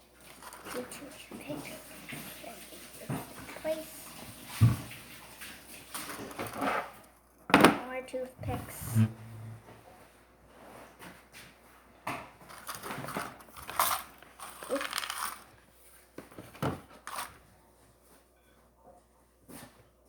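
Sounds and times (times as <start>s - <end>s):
hands handling toothpicks and dough: 12.4s - 17.4s.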